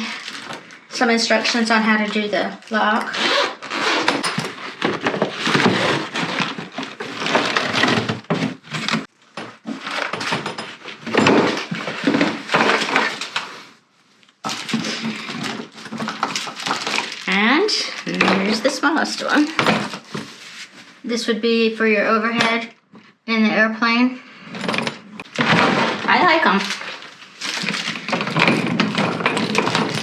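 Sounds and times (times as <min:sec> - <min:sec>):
suitcase rustling and knocking: 0:04.0 - 0:12.8, 0:27.6 - 0:30.0.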